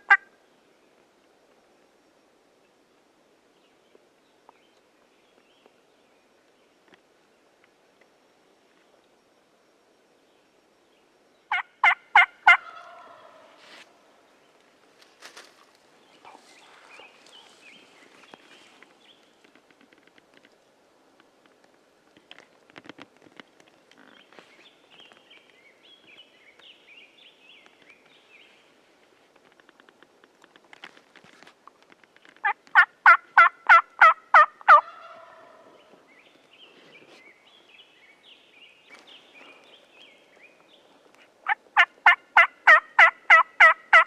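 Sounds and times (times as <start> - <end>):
turkey gobbling: 0.1 - 0.3, 11.5 - 13.6, 32.4 - 35.7, 41.4 - 44.0
turkey yelps: 11.5 - 13.5, 32.4 - 35.7, 41.4 - 44.0.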